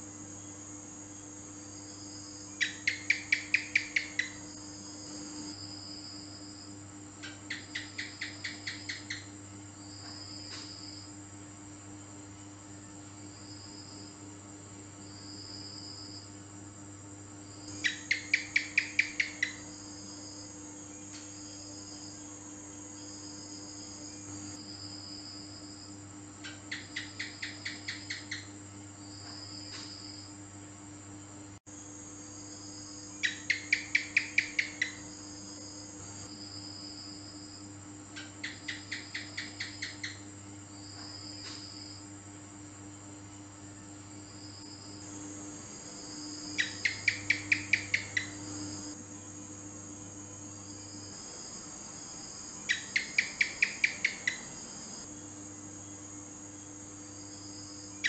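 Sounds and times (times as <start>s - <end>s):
crickets trilling: 0.0s - 58.0s
gecko clicking chirps: 2.6s - 4.4s, 7.2s - 9.3s, 17.7s - 19.7s, 26.4s - 28.5s, 33.2s - 35.0s, 38.2s - 40.2s, 46.5s - 48.9s, 52.7s - 54.5s.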